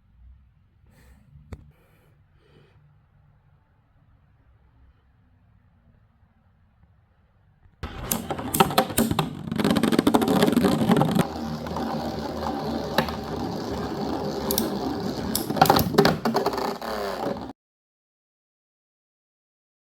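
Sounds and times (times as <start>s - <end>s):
sharp clicks and rattles: 7.8s - 17.5s
spinning top whirring: 7.8s - 17.5s.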